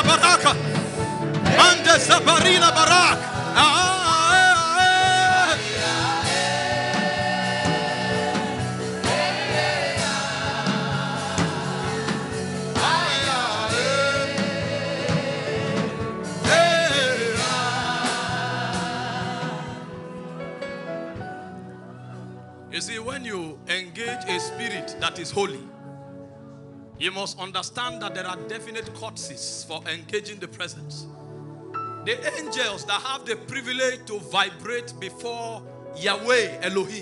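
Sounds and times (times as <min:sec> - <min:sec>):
gospel singing: 0:00.0 - 0:21.7
instrumental backing: 0:00.0 - 0:37.0.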